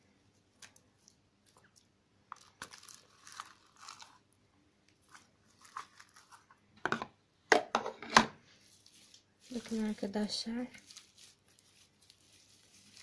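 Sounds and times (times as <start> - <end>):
slime crackling and popping: 0.5 - 6.4.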